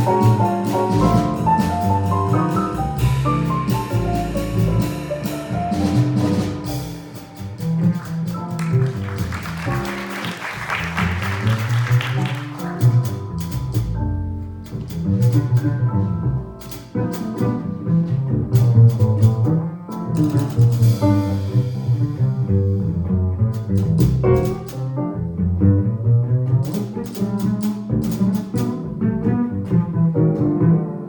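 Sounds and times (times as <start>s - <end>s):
drums: 0.0s - 25.2s, 26.5s - 30.7s
double bass: 0.0s - 31.0s
piano: 0.0s - 31.0s.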